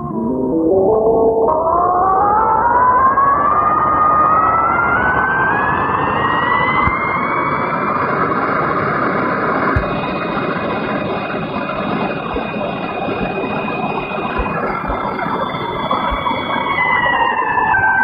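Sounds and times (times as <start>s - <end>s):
siren steady high pitch: 0.0s - 18.0s
loud rushing noise: 6.0s - 17.3s.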